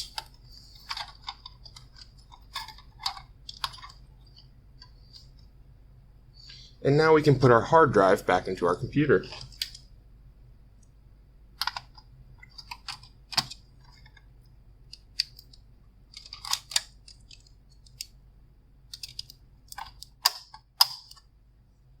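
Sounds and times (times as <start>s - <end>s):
metal and plastic clicks: 11.6s - 14.3s, 14.9s - 18.2s, 18.9s - 21.3s.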